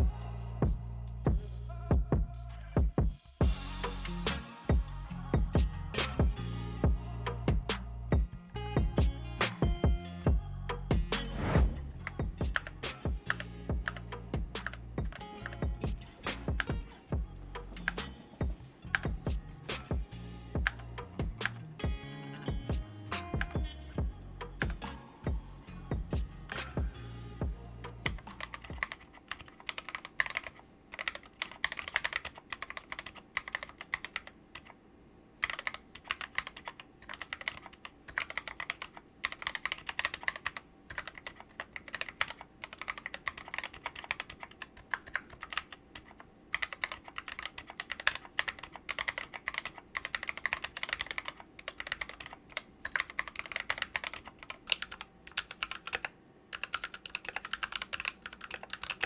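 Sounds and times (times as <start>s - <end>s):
mechanical keyboard typing: 12.5s - 15.7s, 16.3s - 23.9s, 28.0s - 34.8s, 35.4s - 59.0s.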